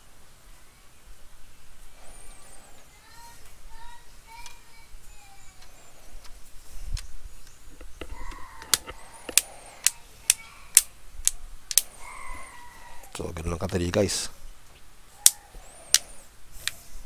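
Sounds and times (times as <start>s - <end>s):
sharp clicks: 5.6s - 12.0s, 15.2s - 16.8s.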